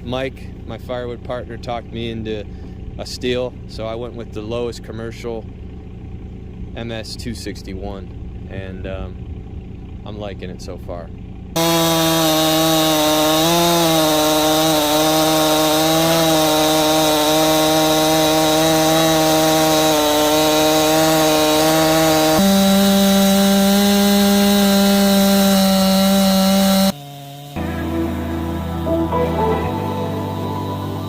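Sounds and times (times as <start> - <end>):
chainsaw sawing a log: 11.6 - 27.7.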